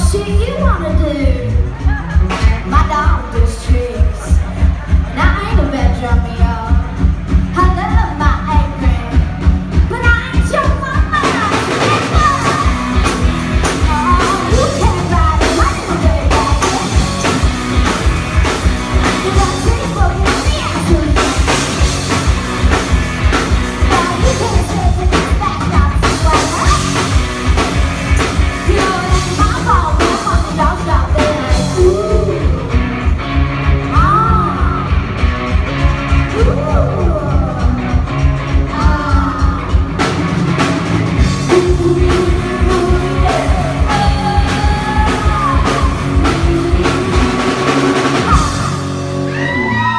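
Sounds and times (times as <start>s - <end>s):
rock band playing: 0.0s - 49.9s
person singing: 11.0s - 17.9s, 28.6s - 32.9s, 36.2s - 39.9s, 41.3s - 49.9s.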